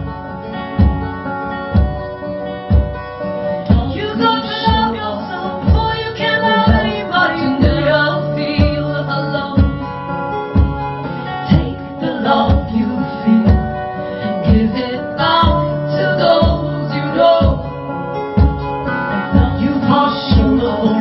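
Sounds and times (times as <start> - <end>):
acoustic guitars strummed: 0.0 - 21.0
women singing: 3.7 - 10.1, 11.4 - 21.0.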